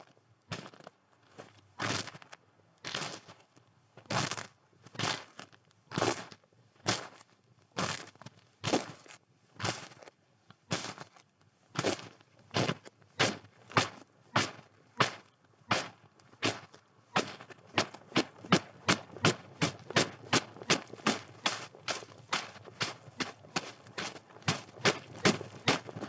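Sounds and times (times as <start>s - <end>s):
footsteps crunching in snow: 17.2s - 26.0s.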